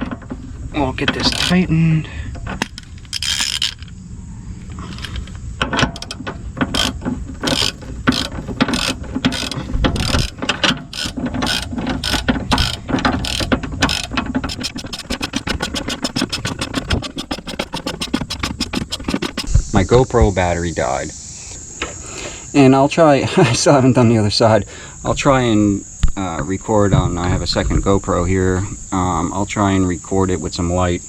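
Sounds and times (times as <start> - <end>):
ratchet wrench clicking: 1.1 - 1.7, 2.6 - 3.9, 4.9 - 19.7.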